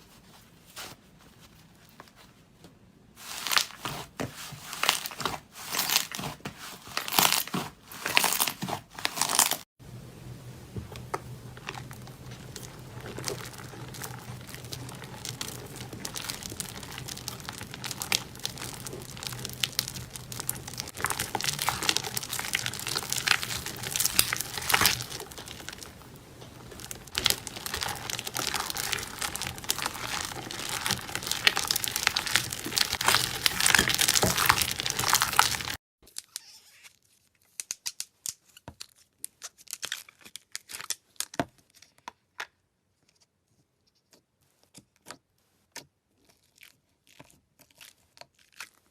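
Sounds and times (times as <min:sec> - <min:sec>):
slime crackling and popping: 0:03.2 - 0:35.8.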